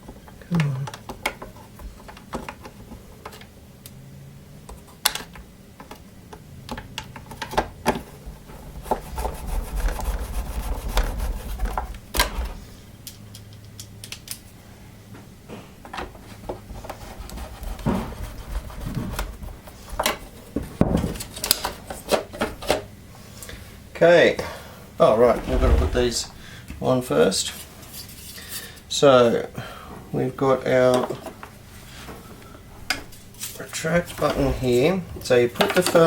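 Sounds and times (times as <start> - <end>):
plastic parts clicking and knocking: 0.1 - 3.5, 4.7 - 8.1, 35.5 - 36.0
low rumble: 25.1 - 26.6.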